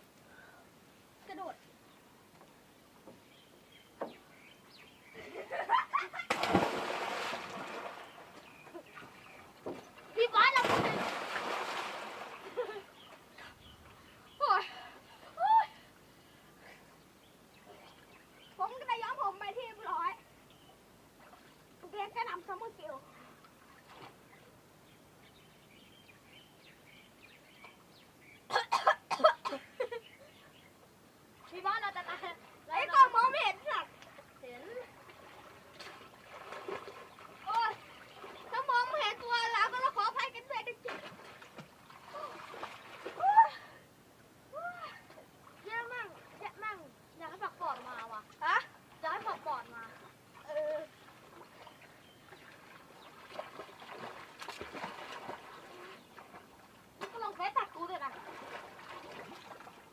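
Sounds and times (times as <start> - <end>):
big splash into water: 6.2 - 8.2, 10.4 - 12.5.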